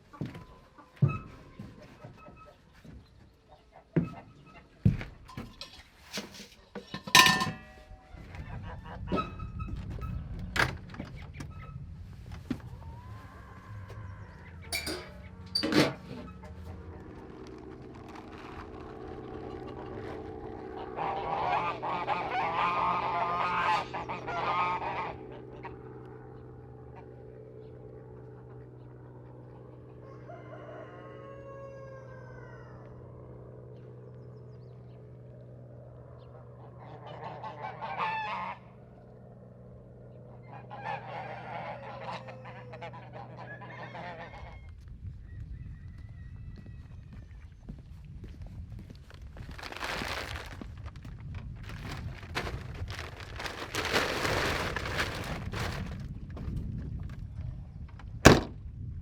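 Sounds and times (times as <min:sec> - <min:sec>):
waterfowl honking: 0:20.8 - 0:25.7, 0:36.9 - 0:38.7, 0:40.4 - 0:44.6.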